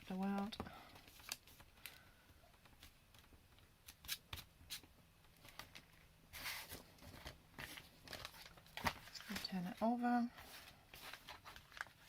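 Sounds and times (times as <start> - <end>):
card stock rustling and tapping: 6.7 - 9.5.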